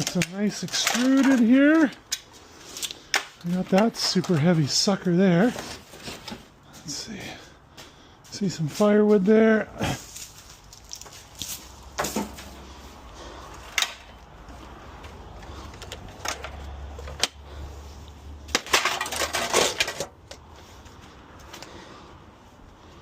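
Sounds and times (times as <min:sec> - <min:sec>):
scrap metal clanking: 0:18.5 - 0:20.2.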